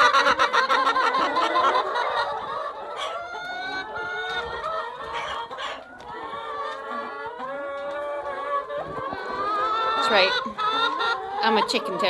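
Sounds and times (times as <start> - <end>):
hens clucking: 0.0 - 12.0.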